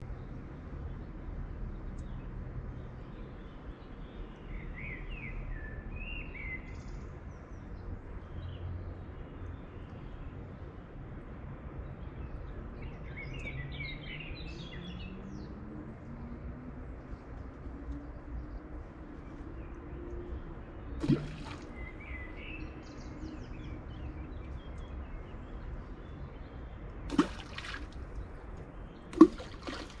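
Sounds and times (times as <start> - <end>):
low rush of water: 20.7 - 22.8, 26.9 - 30.0.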